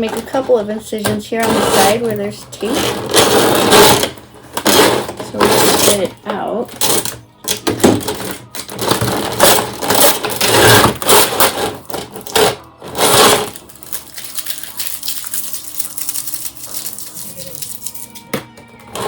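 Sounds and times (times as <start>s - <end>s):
packaging rustling and scraping: 1.3s - 6.1s, 7.9s - 18.3s.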